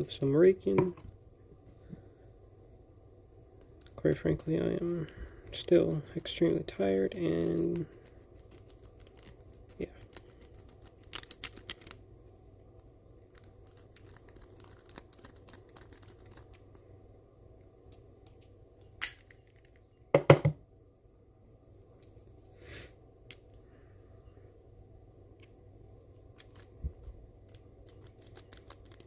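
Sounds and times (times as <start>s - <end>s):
lock picks scratching and clicking: 5.6s - 12.0s, 13.3s - 16.8s, 27.4s - 29.0s.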